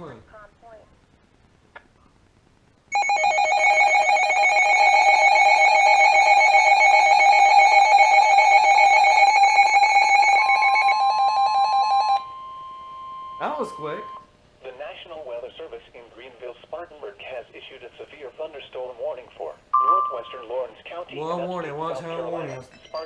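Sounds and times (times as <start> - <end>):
fast-warbling electronic alarm tone: 2.9 - 14.2
steady single-pitch alert tone: 7.8 - 14.3, 19.8 - 20.6.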